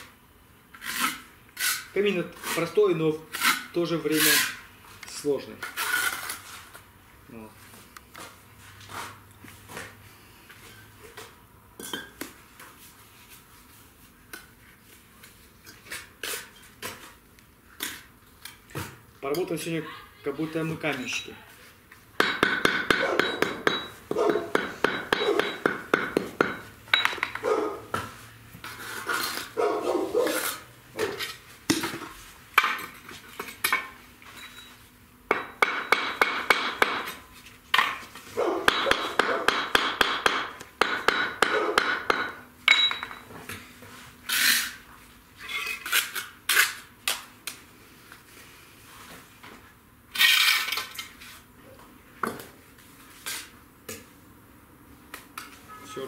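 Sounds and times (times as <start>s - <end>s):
trowel scraping through mortar: 0.7s - 4.6s, 5.6s - 6.5s, 28.6s - 31.4s, 44.2s - 44.8s, 50.1s - 51.1s.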